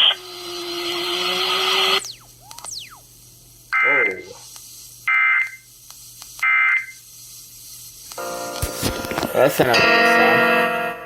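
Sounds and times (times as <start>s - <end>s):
falling whistles: 1.8s - 3.1s
warbling digital data tones: 1.8s - 3.1s, 3.7s - 4.4s.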